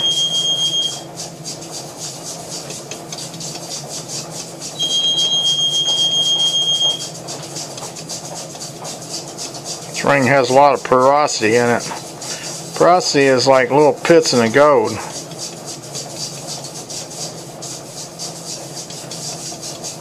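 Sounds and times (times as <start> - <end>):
high beep-like tone: 0.0 - 1.0, 4.8 - 7.1
machine hum: 0.0 - 20.0.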